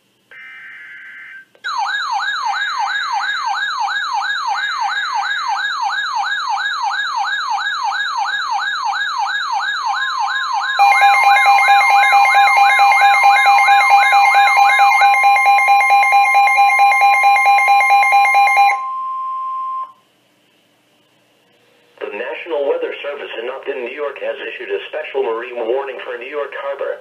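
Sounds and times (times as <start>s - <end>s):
electronic siren wailing: 0.3s - 20.0s.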